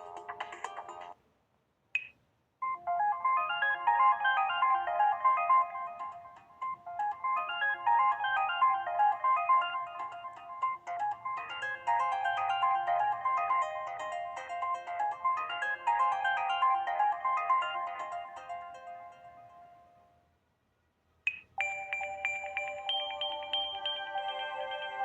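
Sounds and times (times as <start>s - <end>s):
phone playing synthesized melody: 0.0s - 1.2s, 2.6s - 20.0s, 21.6s - 25.0s.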